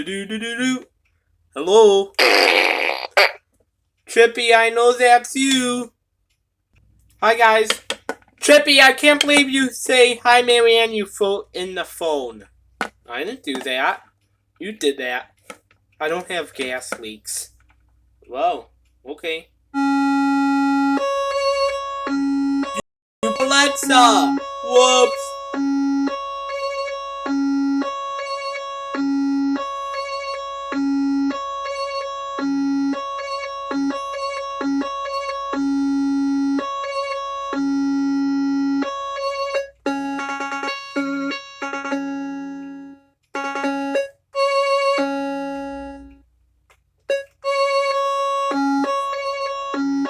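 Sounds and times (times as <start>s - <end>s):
electronic keyboard melody: 19.8s - 46.2s, 47.1s - 50.0s.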